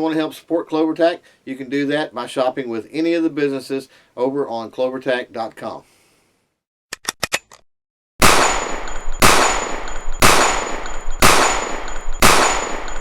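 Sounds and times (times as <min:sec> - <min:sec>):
heavy ringing bangs: 0:08.2 - 0:13.0.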